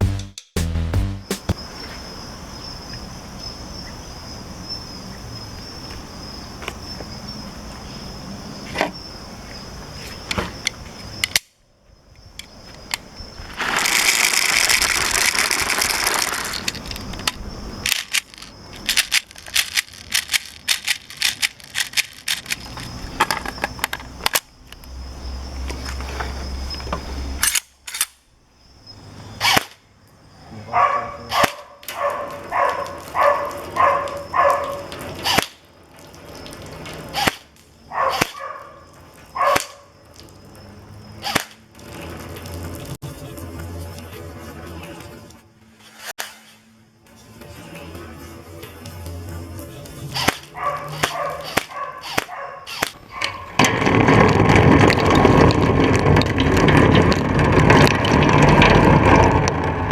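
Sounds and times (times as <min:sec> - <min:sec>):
high insect drone: 0:01.6 - 0:27.5, 0:38.7 - 0:45.9, 0:46.7 - 0:52.2
bb impacts clicking: 0:12.4 - 0:24.8
loud hissing: 0:12.8 - 0:23.2.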